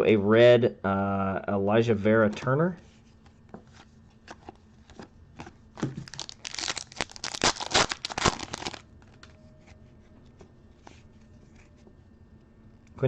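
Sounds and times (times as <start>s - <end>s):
plastic wrapper crinkling: 5.8s - 9.4s.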